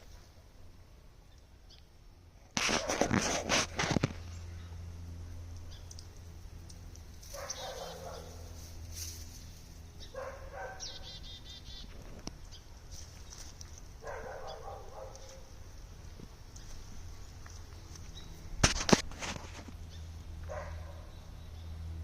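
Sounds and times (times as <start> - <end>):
ducks calling: 7.3 - 8.6, 10.0 - 12.6.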